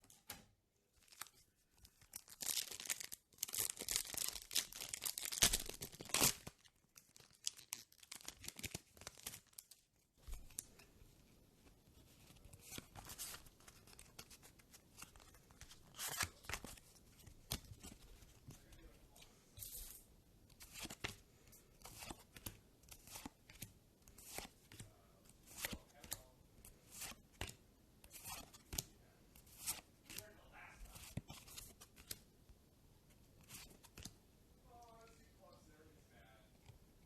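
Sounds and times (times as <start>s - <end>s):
wrapper crinkling: 1.0s - 9.8s
cards rustling: 1.0s - 32.2s, 33.4s - 34.2s.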